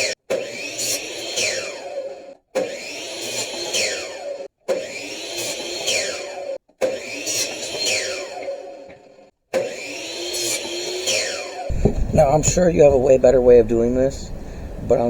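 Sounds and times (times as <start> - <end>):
power tool cutting wood: 0.0 - 13.4.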